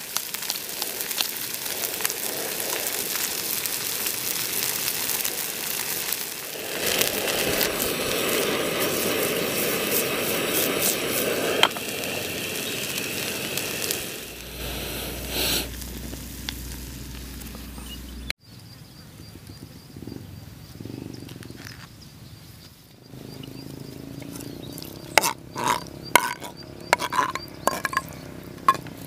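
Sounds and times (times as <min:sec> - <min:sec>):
food sizzling in a pan: 0:00.0 - 0:18.3.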